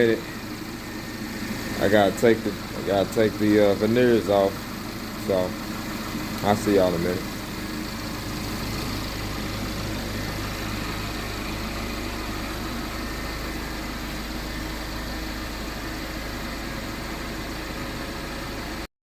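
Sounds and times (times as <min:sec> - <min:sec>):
car engine idling: 0:00.0 - 0:18.9.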